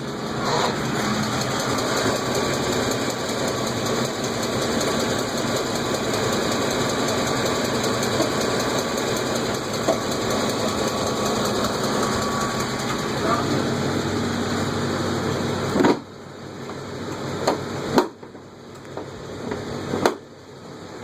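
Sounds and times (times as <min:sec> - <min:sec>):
truck engine running: 0:00.0 - 0:20.0
rapid engine ticking: 0:00.8 - 0:13.6.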